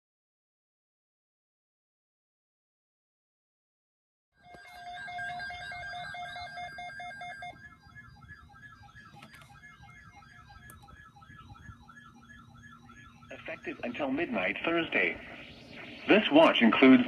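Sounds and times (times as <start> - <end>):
pulsing multi-tone alert beep: 4.4 - 17.0
warbling siren-like tone: 4.4 - 17.0.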